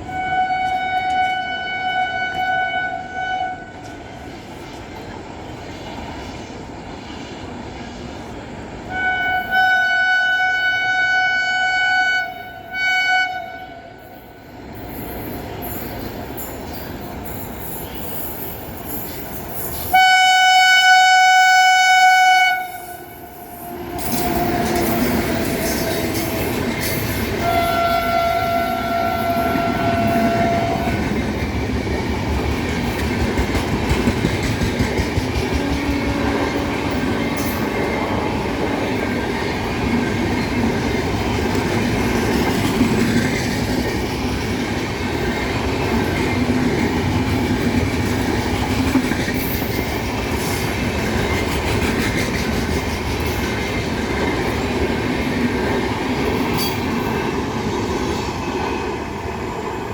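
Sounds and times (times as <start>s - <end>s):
locomotive horn blasts: 0.0s - 3.8s, 8.9s - 14.0s, 19.9s - 26.6s, 27.4s - 31.1s
train coaches clattering past: 0.0s - 59.9s.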